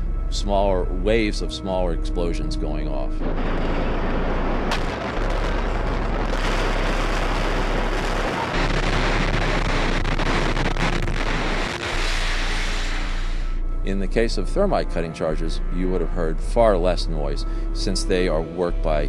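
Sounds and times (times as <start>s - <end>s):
building collapsing rumbling roar: 3.2s - 13.7s
sharp cracks: 3.2s - 13.7s.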